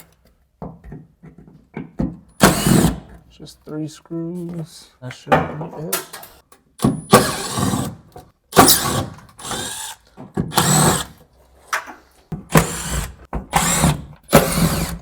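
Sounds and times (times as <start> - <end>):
power drill driver bursts: 2.4 - 3.0, 6.8 - 8.0, 8.6 - 11.1, 12.5 - 15.0.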